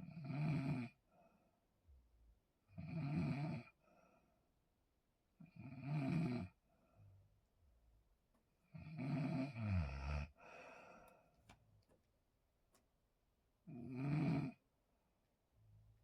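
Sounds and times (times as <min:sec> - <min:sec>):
quiet breath: 0:01.0 - 0:02.1, 0:03.7 - 0:04.6, 0:06.6 - 0:07.5, 0:09.9 - 0:11.8.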